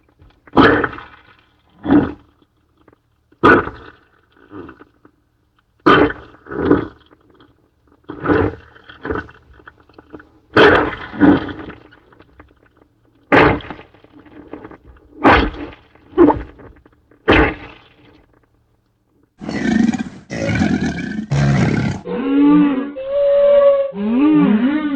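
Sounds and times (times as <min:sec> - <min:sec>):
creature roars: 0:19.4 - 0:23.2, 0:23.9 - 0:24.9
deep creature call: 0:19.4 - 0:24.9.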